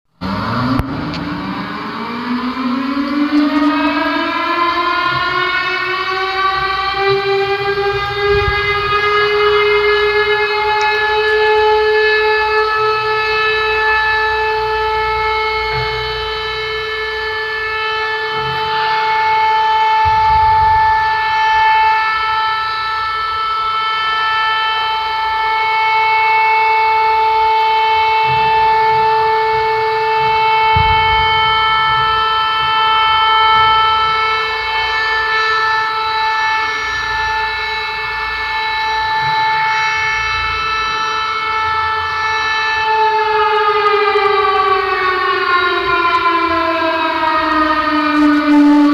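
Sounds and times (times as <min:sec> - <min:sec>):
low rumbles: 0:00.2 - 0:12.5, 0:19.9 - 0:23.0
warning siren winding up: 0:00.2 - 0:48.9.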